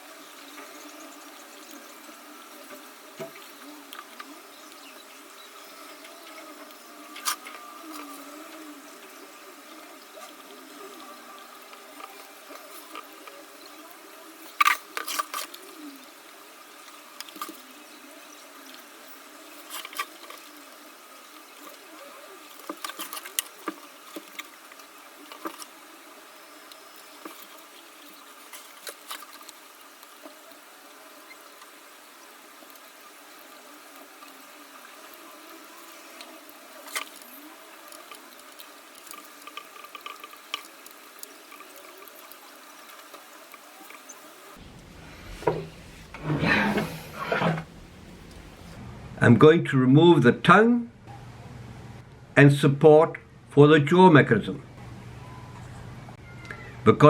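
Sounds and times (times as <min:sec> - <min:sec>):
background hiss: 0:00.0 - 0:48.8.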